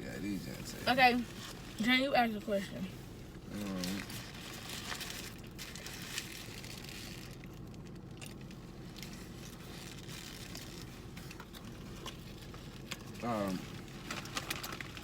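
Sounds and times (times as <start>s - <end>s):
low background hum: 0.0s - 15.0s
food wrappers crinkling: 3.6s - 15.0s.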